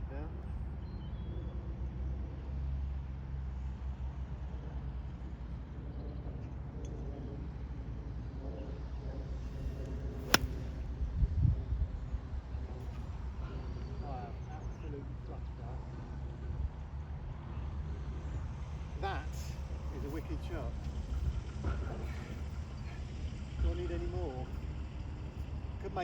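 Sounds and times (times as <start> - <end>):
golf club hitting ball: 9.5 - 10.9.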